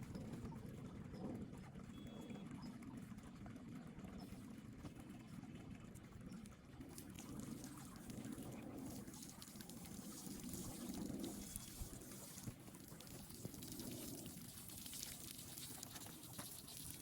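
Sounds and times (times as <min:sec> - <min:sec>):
fountain water trickling: 0:05.1 - 0:17.0.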